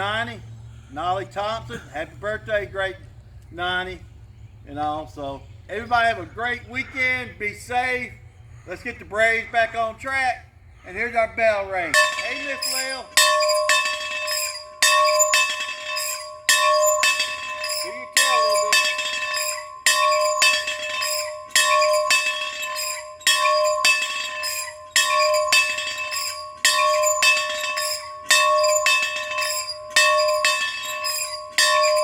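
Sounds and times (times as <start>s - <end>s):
bell ringing: 11.9s - 32.0s.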